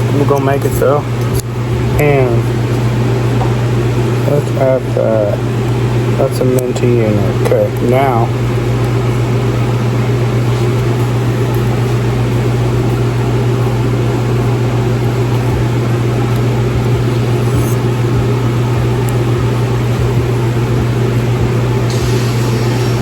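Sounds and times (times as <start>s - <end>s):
low mechanical hum of shop equipment: 0.0s - 23.0s.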